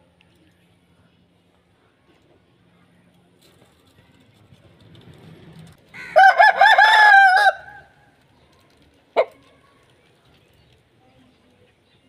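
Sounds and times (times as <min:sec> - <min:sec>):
rooster crowing: 0:06.0 - 0:07.9.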